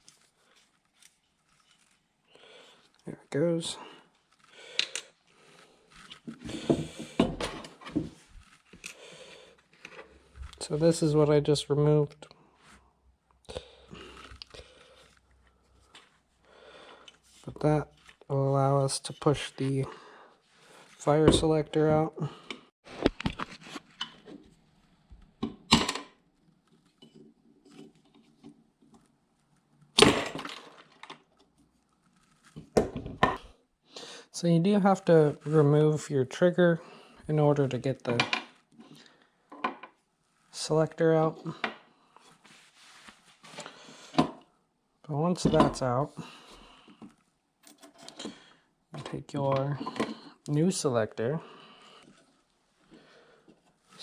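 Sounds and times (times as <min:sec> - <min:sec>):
small gun parts clicking and knocking: 0:04.4 - 0:08.1.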